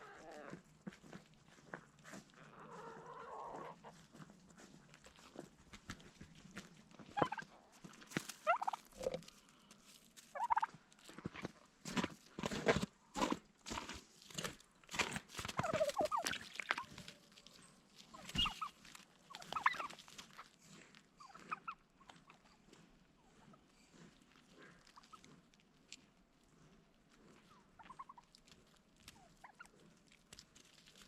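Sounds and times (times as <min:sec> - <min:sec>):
turkeys gobbling: 0:02.5 - 0:04.2, 0:07.1 - 0:09.3, 0:10.3 - 0:10.8, 0:15.5 - 0:17.2, 0:18.0 - 0:20.5, 0:21.2 - 0:22.5, 0:24.9 - 0:25.2, 0:27.8 - 0:28.3, 0:29.1 - 0:29.8.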